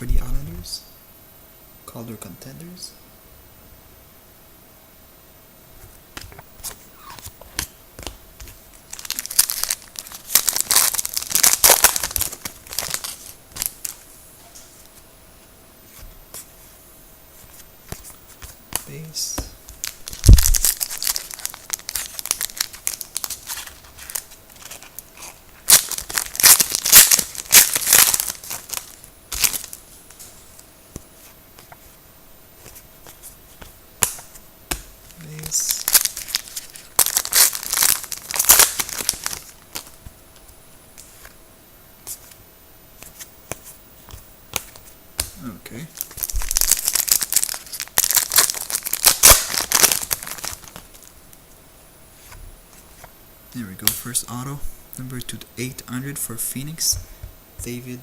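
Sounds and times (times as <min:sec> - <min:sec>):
wrapper crinkling and tearing: 0:08.9 - 0:14.0, 0:19.8 - 0:29.8, 0:35.1 - 0:40.0, 0:46.0 - 0:51.1.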